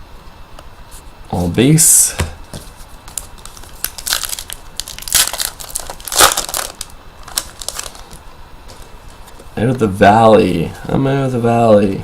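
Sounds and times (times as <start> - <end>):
wrapper tearing and crinkling: 3.1 - 8.8.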